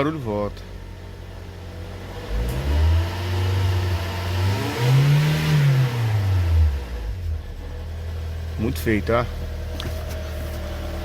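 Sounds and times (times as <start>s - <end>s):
car engine revving: 0.9s - 11.0s.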